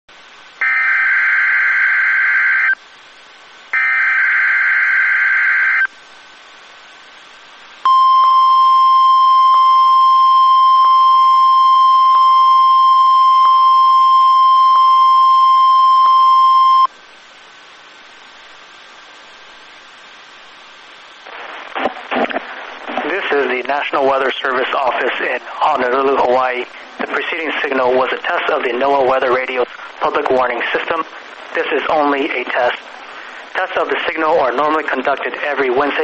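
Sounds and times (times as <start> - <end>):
faint radio hiss: 0.1 - 36.0
steady high alarm tone: 0.6 - 2.8, 3.8 - 5.9, 7.9 - 16.9.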